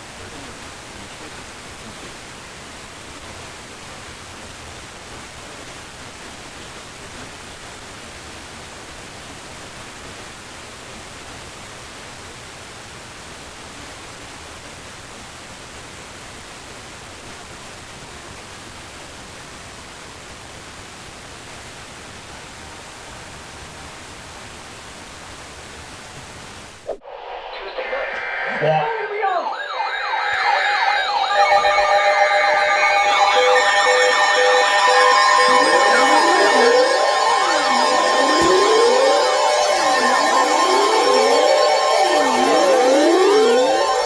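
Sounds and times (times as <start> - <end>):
radio static hiss: 26.3 - 32.6.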